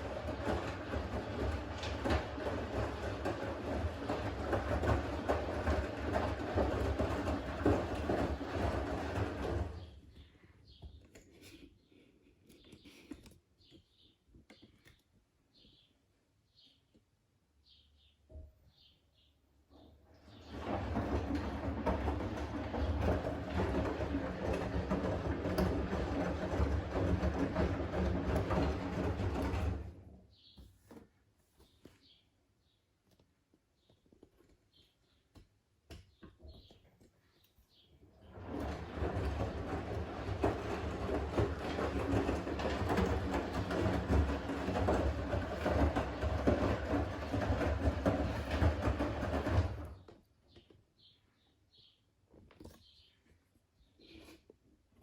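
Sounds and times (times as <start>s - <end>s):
washing machine churning: 0.0s - 10.3s, 20.0s - 30.3s, 38.1s - 50.1s.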